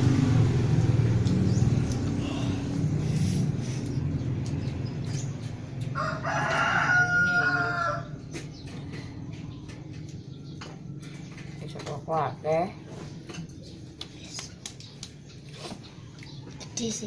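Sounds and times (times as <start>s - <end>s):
rooster crowing: 5.8s - 8.3s.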